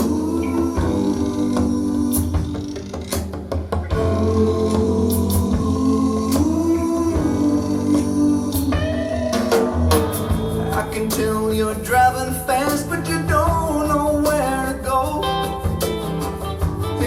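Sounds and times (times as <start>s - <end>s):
blues-rock song over loudspeaker: 3.8s - 17.0s.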